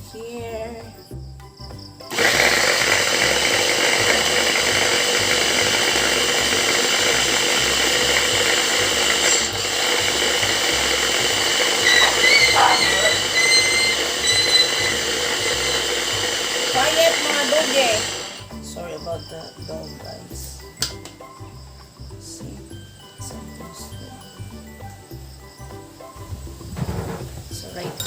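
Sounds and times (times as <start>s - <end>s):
electric blender running: 2.1s - 18.5s.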